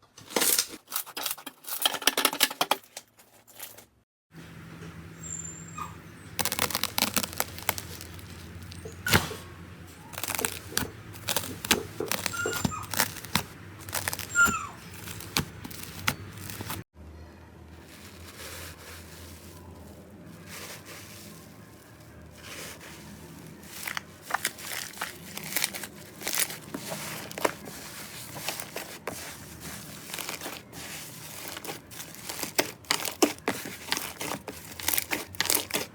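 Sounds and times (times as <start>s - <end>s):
slime squeezed by hand: 6.4s - 9.4s, 10.1s - 16.8s.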